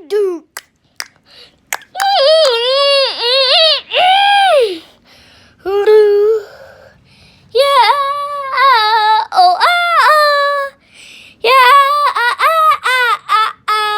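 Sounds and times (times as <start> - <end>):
young child wailing: 2.0 - 4.8.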